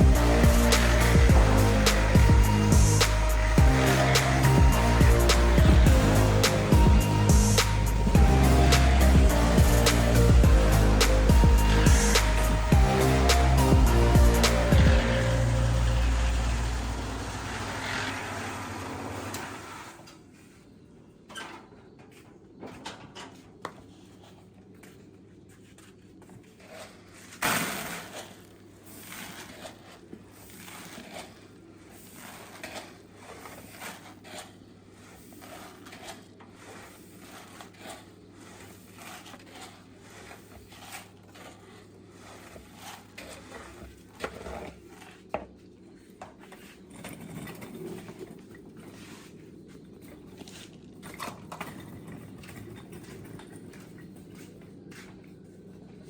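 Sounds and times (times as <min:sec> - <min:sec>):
music: 0:00.0 - 0:17.0.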